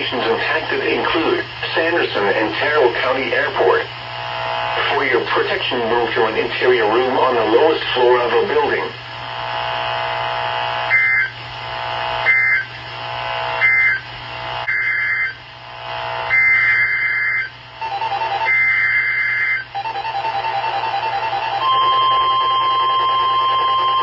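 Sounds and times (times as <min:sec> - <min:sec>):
two-tone digital data bursts: 0:10.8 - 0:11.4, 0:12.2 - 0:12.8, 0:13.6 - 0:14.1, 0:14.7 - 0:15.4, 0:16.3 - 0:24.0
rapid beeping: 0:10.9 - 0:11.4, 0:12.2 - 0:12.8, 0:13.6 - 0:14.1, 0:16.3 - 0:24.0.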